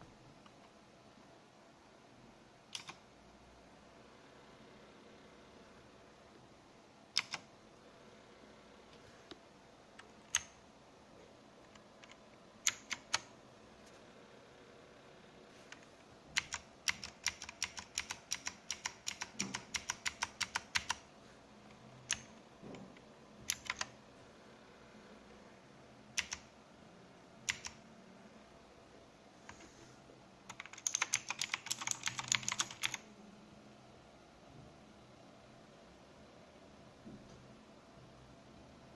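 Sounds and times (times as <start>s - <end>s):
mechanical keyboard typing: 2.7s - 3.0s, 7.1s - 7.5s, 10.0s - 10.6s, 11.6s - 13.3s, 15.7s - 21.1s, 22.0s - 22.3s, 23.4s - 24.0s, 26.1s - 26.5s, 27.4s - 27.8s, 30.5s - 33.0s.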